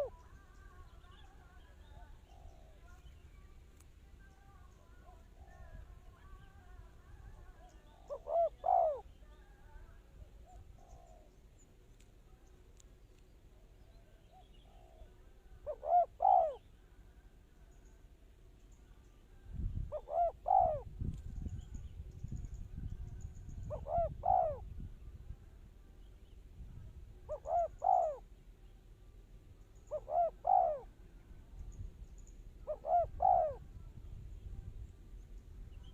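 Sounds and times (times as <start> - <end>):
dove cooing: 0.0 - 3.0, 4.6 - 11.4, 14.0 - 16.9, 19.8 - 21.0, 23.5 - 24.7, 27.2 - 28.3, 29.8 - 31.1, 32.6 - 33.9.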